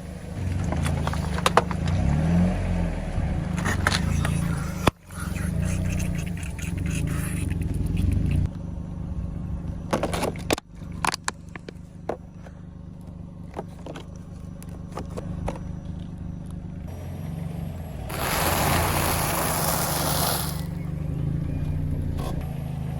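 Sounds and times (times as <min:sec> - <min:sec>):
car engine running low hum: 0:00.0 - 0:22.9
tyres crushing objects: 0:18.1 - 0:20.8.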